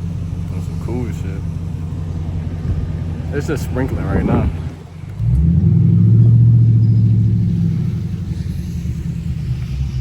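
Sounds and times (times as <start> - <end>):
deep car exhaust rumble: 0.0 - 10.0.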